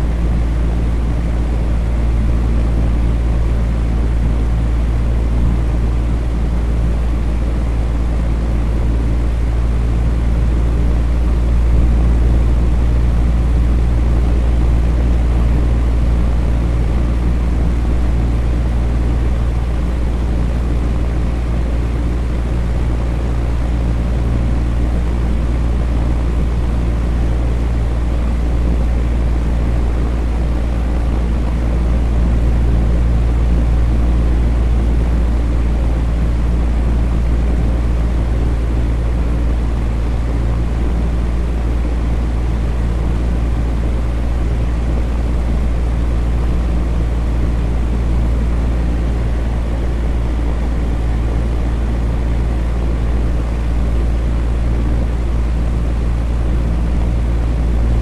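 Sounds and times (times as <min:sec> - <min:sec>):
electric fan humming: 0:00.0 - 0:58.0.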